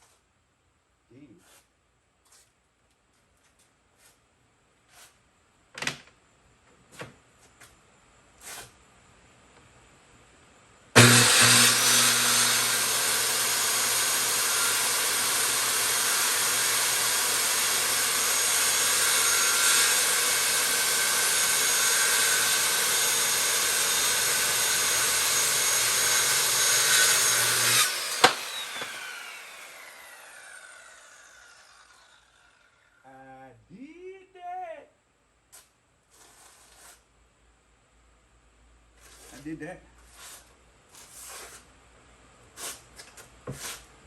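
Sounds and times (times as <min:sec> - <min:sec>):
electric saw cutting wood: 0:11.0 - 0:33.0.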